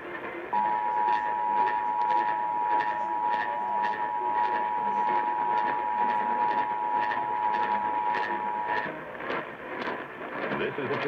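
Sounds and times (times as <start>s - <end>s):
radio crackle and hiss: 0.0s - 11.0s
two-tone alert signal: 0.6s - 8.9s.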